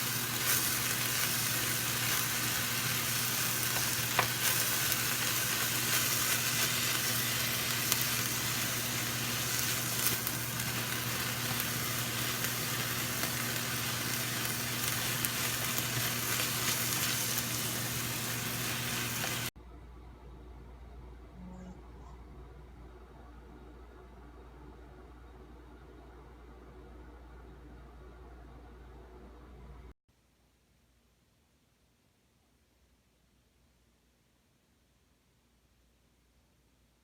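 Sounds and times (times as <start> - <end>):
food sizzling in a pan: 0.0 - 19.6.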